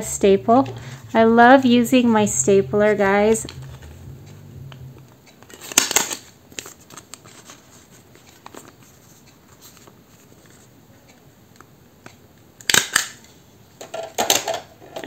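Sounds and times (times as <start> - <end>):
paper rustling: 5.4 - 10.7
stapler clacking crunch: 5.5 - 6.3, 12.6 - 13.2.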